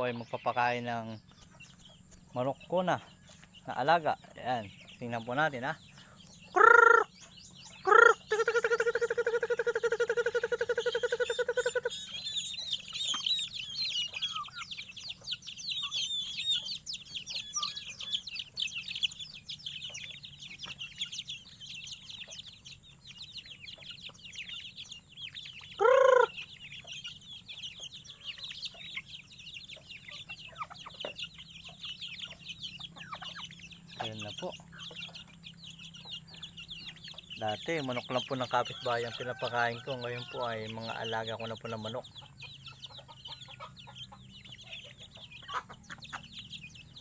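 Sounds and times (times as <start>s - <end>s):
chicks peeping: 0.0s - 47.0s
loud short bird call: 6.5s - 7.2s, 25.8s - 26.4s.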